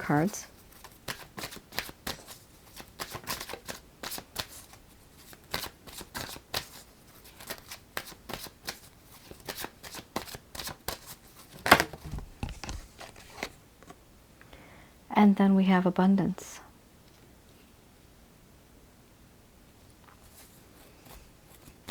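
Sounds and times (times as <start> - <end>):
cards being shuffled: 0.6 - 13.6.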